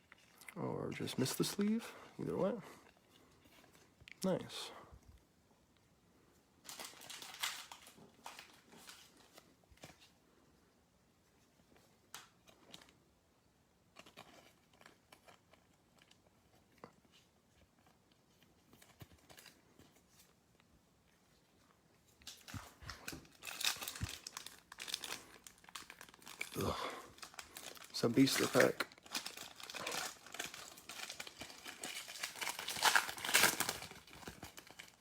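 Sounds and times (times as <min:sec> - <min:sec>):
cards and plastic packaging crinkling: 0:00.0 - 0:04.8, 0:06.6 - 0:10.2, 0:13.8 - 0:20.4, 0:22.0 - 0:35.0.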